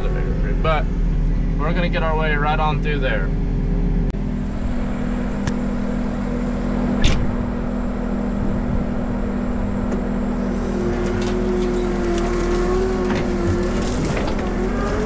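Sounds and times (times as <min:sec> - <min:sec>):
skid loader engine running: 0:03.5 - 0:15.0.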